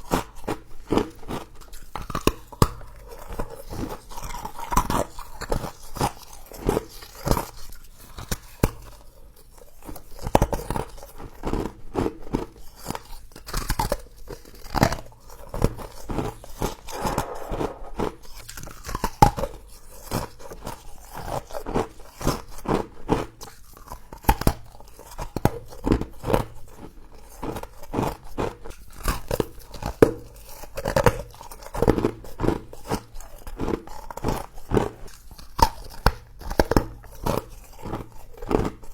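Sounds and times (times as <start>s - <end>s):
crunching and chewing frost: 30.8s - 38.9s.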